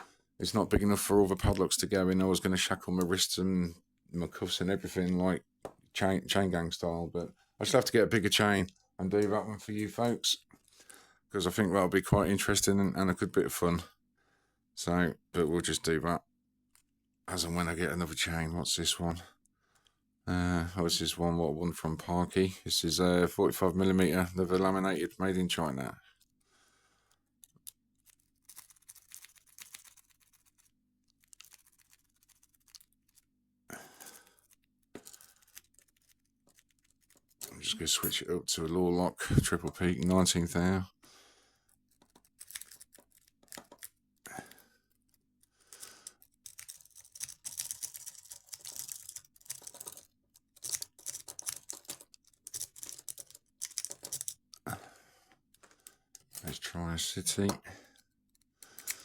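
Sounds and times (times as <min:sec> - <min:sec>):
lock pick clicking and scratching: 0:27.2 - 0:33.3, 0:34.2 - 0:37.4, 0:41.7 - 0:44.3, 0:44.9 - 0:54.7, 0:55.4 - 0:56.6, 0:57.4 - 0:59.0
lock pick scratching in lock: 0:41.9 - 0:44.1, 0:44.9 - 0:54.6.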